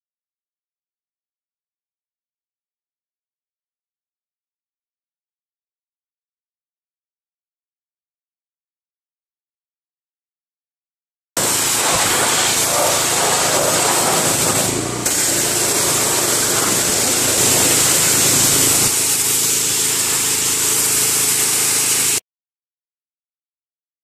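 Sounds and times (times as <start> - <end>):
high-pressure water jet hissing: 11.4 - 22.2
pressure washer engine hum: 11.4 - 22.2.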